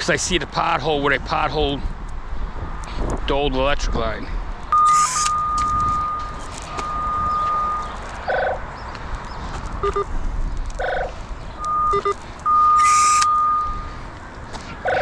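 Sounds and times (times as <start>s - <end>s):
quick double beeps: 4.7s - 8.5s, 9.8s - 10.1s, 11.6s - 13.9s
short chirping beeps: 4.7s - 8.5s, 9.8s - 10.1s, 11.6s - 13.9s
steady high signal tone: 4.7s - 8.6s, 9.8s - 10.1s, 10.8s - 13.9s.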